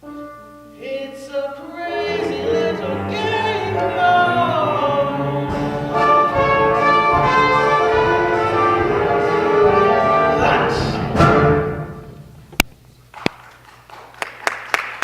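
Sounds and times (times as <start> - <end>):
voices singing: 0.8 - 11.6
band with brass: 1.9 - 12.2.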